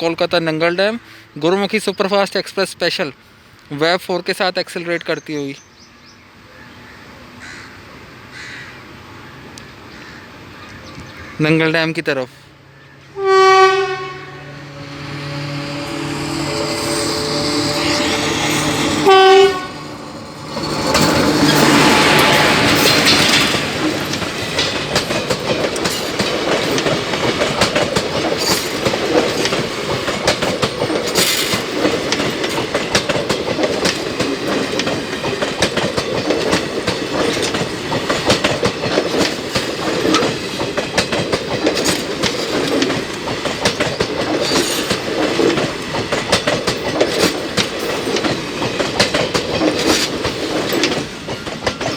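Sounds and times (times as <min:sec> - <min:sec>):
train rumble: 0:00.0 - 0:51.9
train horn honk: 0:13.1 - 0:20.1
wheels clacking over rail joints: 0:15.1 - 0:51.9.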